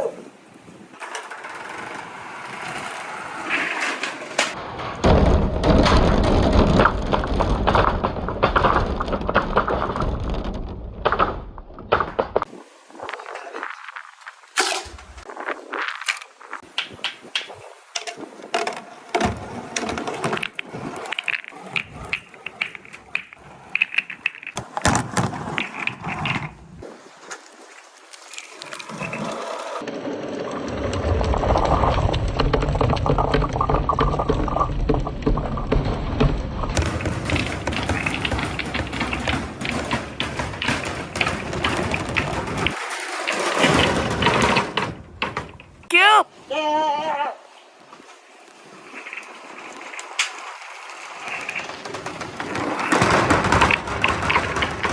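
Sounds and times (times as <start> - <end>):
balls rolling rumble: 0.4 - 26.9, 28.3 - 45.9, 48.5 - 54.9
marbles clacking on wooden track: 1.0 - 4.6, 14.6 - 15.3, 15.9 - 26.8, 30.8 - 45.9, 49.0 - 54.9
low rolling rumble: 29.8 - 45.9.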